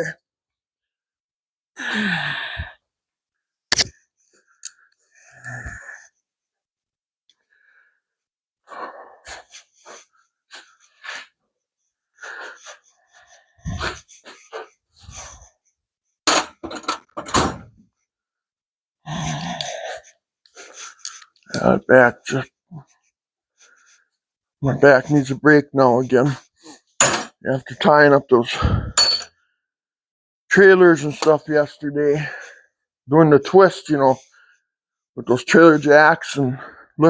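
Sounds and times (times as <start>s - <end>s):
tools knocking and clunking: 16.3s - 17.7s.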